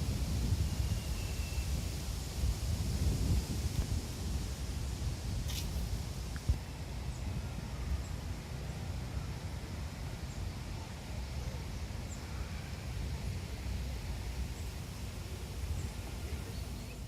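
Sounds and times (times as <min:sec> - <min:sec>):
wind buffeting microphone: 0:00.0 - 0:06.6
faint bird chirps: 0:00.6 - 0:01.8.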